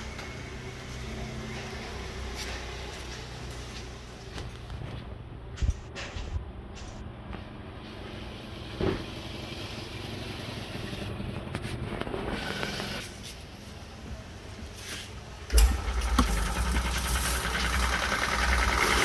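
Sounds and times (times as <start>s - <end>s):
car engine starting and running: 15.4s - 19.0s.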